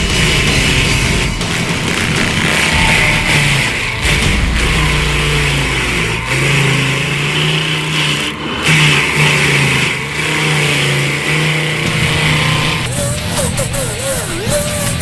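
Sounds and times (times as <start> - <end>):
engine running under load: 0.0 - 15.0.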